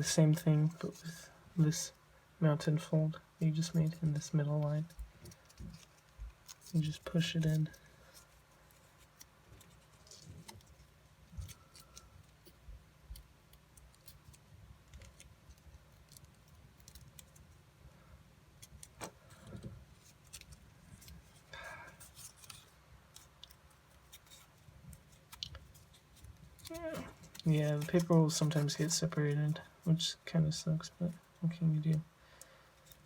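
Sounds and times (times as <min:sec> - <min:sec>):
paper being folded: 0:04.8 - 0:17.5, 0:18.6 - 0:30.0
paper rustle: 0:18.7 - 0:29.6.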